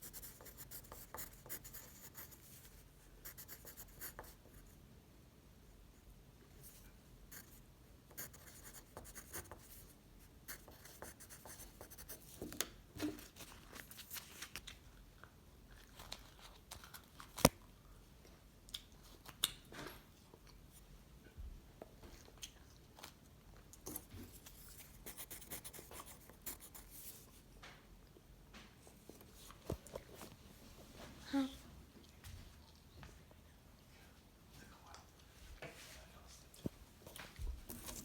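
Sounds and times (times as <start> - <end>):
paper crinkling and crackling: 13.0 - 14.8.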